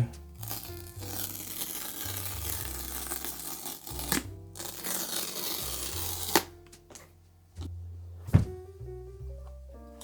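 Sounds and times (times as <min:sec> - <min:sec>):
background music with bass line: 0:00.0 - 0:01.1, 0:05.7 - 0:10.0
wrapping snapping: 0:00.4 - 0:06.5
wrapping tearing and rustling: 0:00.4 - 0:06.5.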